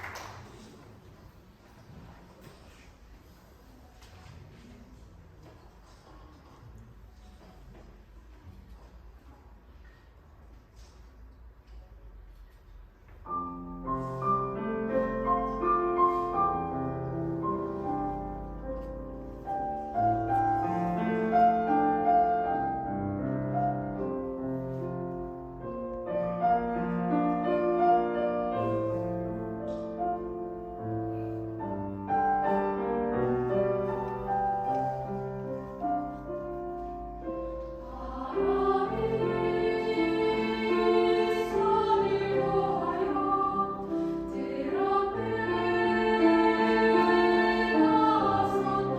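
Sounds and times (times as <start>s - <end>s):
choir singing: 37.3s - 48.9s.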